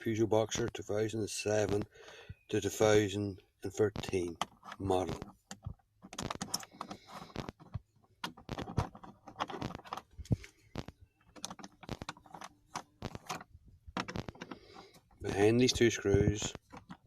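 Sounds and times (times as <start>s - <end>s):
handling clicks and rattles: 3.7s - 17.0s.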